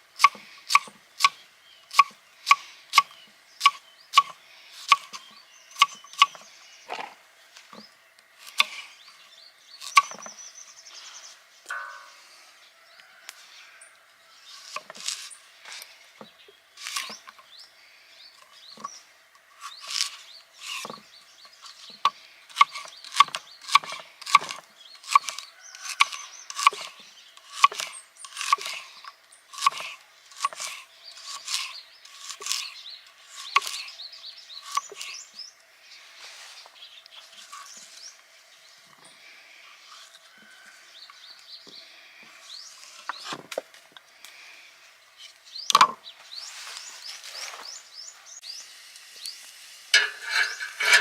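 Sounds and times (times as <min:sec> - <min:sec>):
blade chopping wood: 0:22.6 - 0:28.8.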